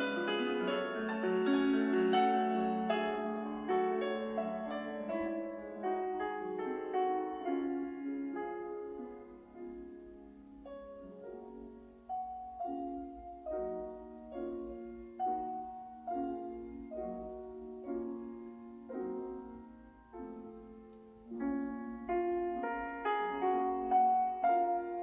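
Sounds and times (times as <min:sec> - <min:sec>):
gentle piano melody: 0:00.0 - 0:25.0.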